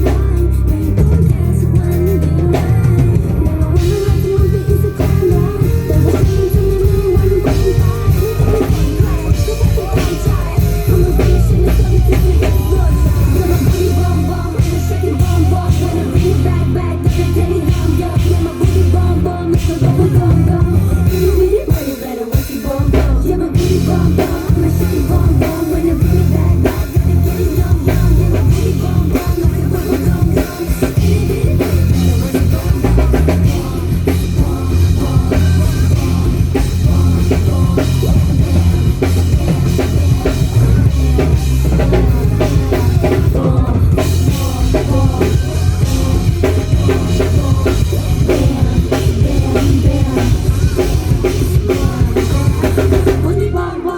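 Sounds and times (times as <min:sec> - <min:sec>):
heavy bass drum: 0:00.0 - 0:21.9, 0:22.6 - 0:53.8
live rock band playing: 0:00.0 - 0:53.9
person singing: 0:00.0 - 0:53.9.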